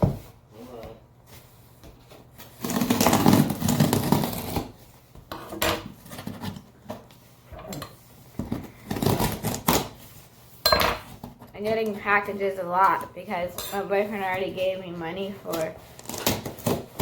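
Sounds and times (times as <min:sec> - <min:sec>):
cardboard box ripping and rustling: 0:02.5 - 0:04.8, 0:15.9 - 0:17.0.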